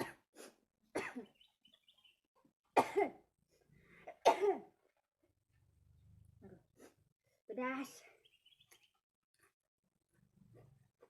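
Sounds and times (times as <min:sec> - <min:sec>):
woman coughing: 0:00.0 - 0:00.2, 0:01.0 - 0:01.3, 0:02.8 - 0:03.2, 0:04.2 - 0:04.7.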